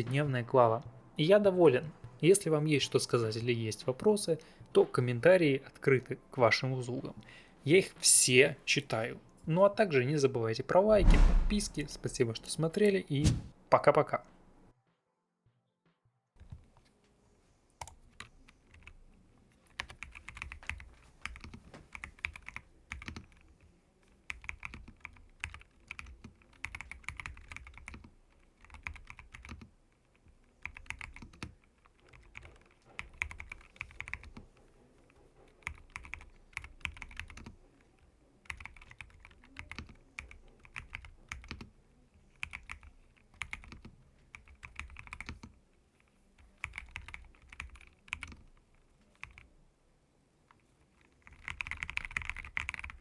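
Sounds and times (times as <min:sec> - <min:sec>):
mechanical keyboard typing: 0:17.8 - 0:45.6, 0:46.4 - 0:49.5, 0:50.5 - 0:53.0.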